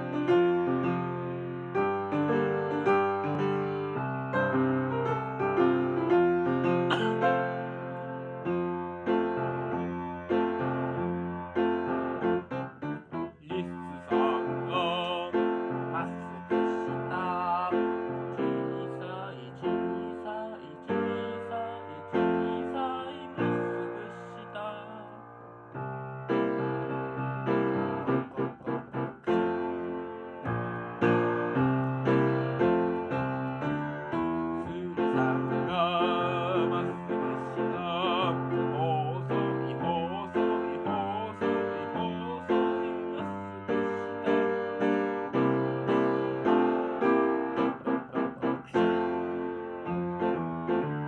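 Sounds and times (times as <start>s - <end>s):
children's song on keyboard: 11.5s - 25.8s, 27.7s - 51.0s.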